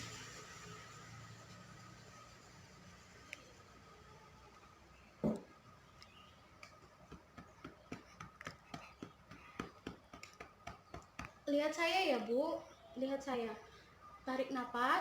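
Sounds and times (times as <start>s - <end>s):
soft knock of cup: 5.2s - 5.5s.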